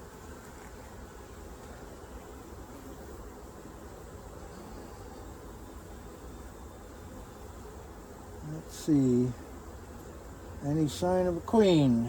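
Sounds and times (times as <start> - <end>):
honeybees buzzing: 0.0 - 12.0
steady hiss: 0.0 - 12.0.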